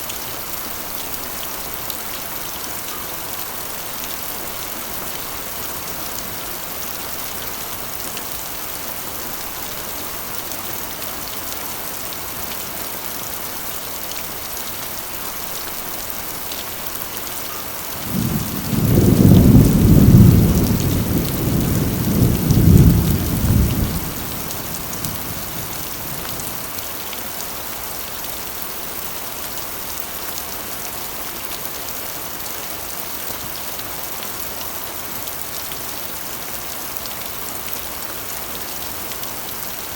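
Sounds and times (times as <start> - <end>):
rain on a metal roof: 0.0 - 39.9
rolling thunder: 18.0 - 26.6.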